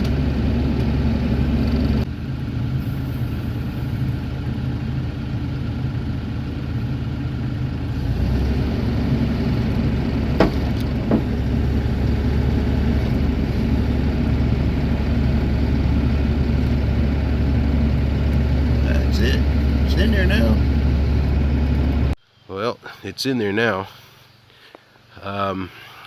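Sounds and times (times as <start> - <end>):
excavator diesel engine running: 0.0 - 22.2
sharp knocks: 10.3 - 11.5.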